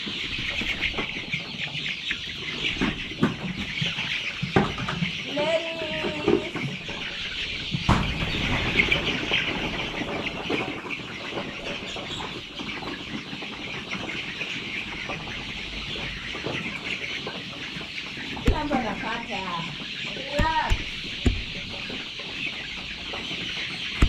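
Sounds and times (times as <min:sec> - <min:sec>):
chickens clucking: 0:00.0 - 0:24.0
knock: 0:18.5 - 0:18.8, 0:20.4 - 0:21.9.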